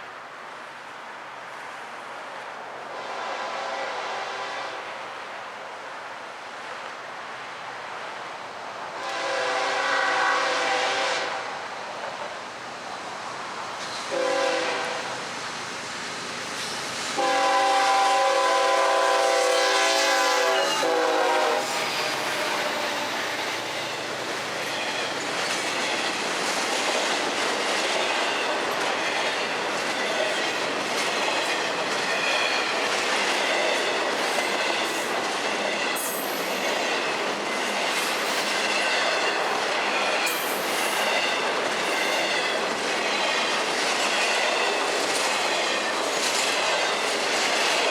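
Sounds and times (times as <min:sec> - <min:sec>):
locomotive horn blasts: 0:02.9 - 0:04.8, 0:09.0 - 0:11.6, 0:14.1 - 0:15.1, 0:17.2 - 0:23.2
train wheels clattering on rails: 0:13.5 - 0:47.9
high-pitched wheel squeals: 0:21.6 - 0:25.2.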